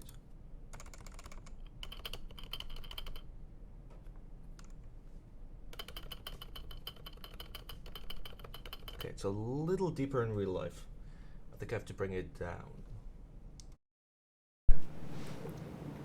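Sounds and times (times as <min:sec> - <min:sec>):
typing on computer keyboard: 0:00.0 - 0:03.3, 0:05.7 - 0:09.2.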